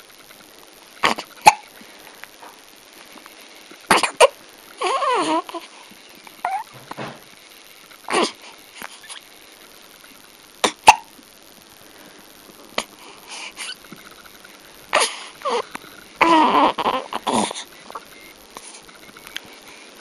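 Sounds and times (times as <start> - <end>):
baby hiccupping: 1.0 - 1.6, 3.9 - 5.7, 6.4 - 6.8, 8.1 - 9.2, 10.6 - 11.1, 14.9 - 17.7
baby vocalizing: 1.0 - 1.6, 3.9 - 5.7, 6.4 - 6.8, 8.1 - 9.2, 14.9 - 17.7.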